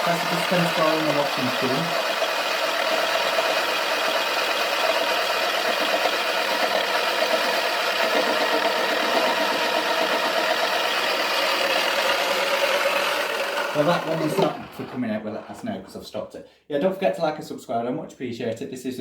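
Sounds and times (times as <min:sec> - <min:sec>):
small motor spinning: 0:00.0 - 0:15.8
ball rattling in drum: 0:05.4 - 0:10.6.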